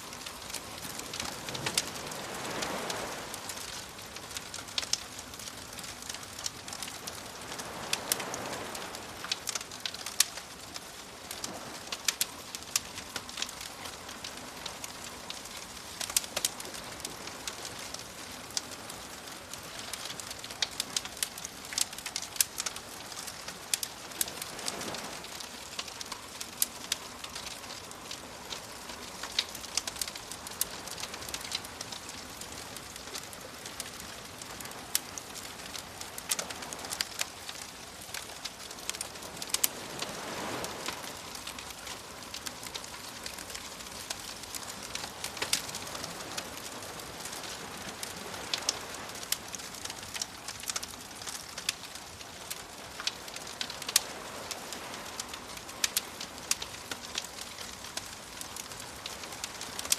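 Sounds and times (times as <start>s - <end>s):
soft ocean waves: 0.0s - 59.9s
wood fire crackling and popping: 0.0s - 59.9s.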